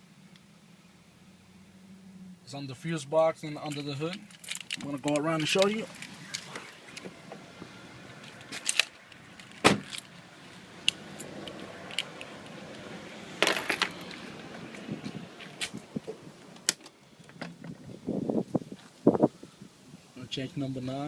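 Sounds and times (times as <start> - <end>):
keys jangling: 3.7 - 6.4, 11.1 - 12.3.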